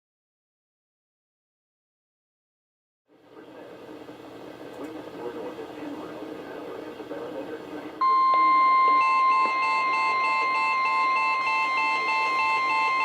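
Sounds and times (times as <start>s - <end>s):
pulsing alarm beeps: 8.0s - 13.0s
steady warning alert tone: 8.0s - 13.0s.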